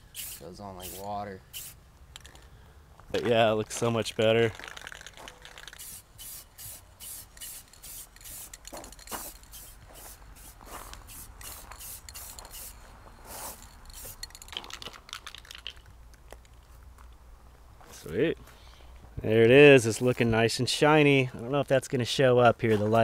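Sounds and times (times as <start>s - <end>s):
spray hissing strokes: 0.0s - 1.8s, 5.5s - 14.4s.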